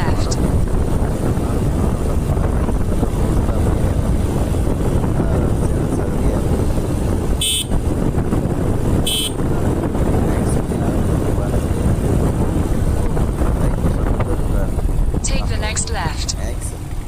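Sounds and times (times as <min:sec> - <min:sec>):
motorcycle engine rumble: 0:00.0 - 0:17.0
wind on microphone: 0:00.0 - 0:17.0
high horn beeps: 0:07.4 - 0:07.8, 0:09.0 - 0:09.4.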